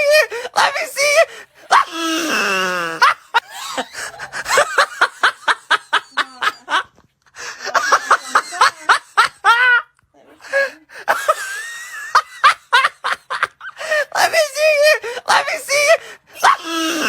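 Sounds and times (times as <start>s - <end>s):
falling vocal cry: 0.0s - 3.2s, 14.1s - 17.0s
rapid snickering laughter: 2.6s - 6.8s.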